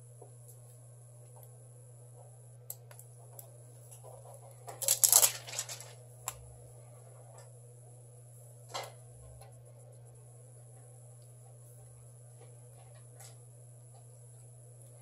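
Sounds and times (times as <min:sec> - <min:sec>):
low electrical hum: 0:00.0 - 0:15.0
rustling clattering handling noise: 0:04.2 - 0:06.0.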